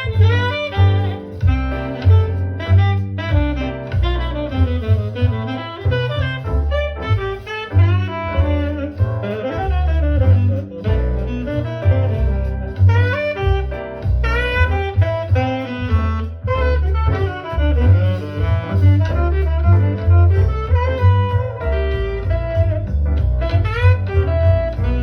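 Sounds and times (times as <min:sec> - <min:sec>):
bass notes: 0:00.0 - 0:25.0
jazz saxophone lead: 0:00.0 - 0:25.0.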